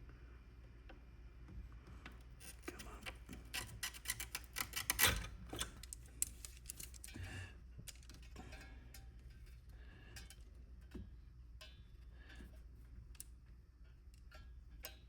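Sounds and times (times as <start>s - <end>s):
hand tools clicking and tapping: 2.5s - 8.6s.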